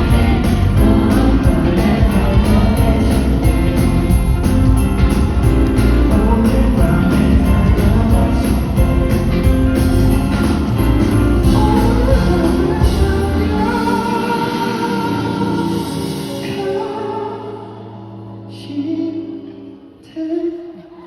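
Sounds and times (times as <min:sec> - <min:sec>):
sleigh bells jingling: 0:00.0 - 0:16.0
live band playing christmas music: 0:00.0 - 0:18.9.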